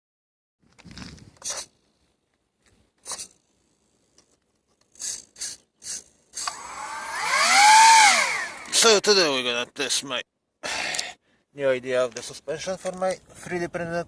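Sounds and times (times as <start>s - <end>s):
electric motor whining: 6.4s - 9.0s.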